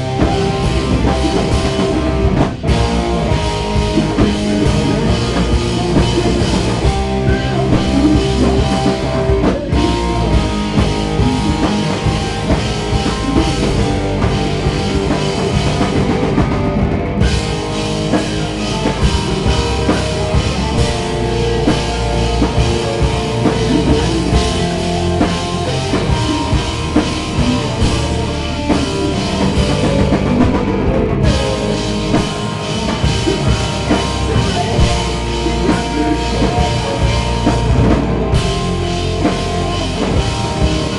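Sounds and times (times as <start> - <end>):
driving drum kit: 0.0 - 40.9
live rock band playing: 0.0 - 40.9.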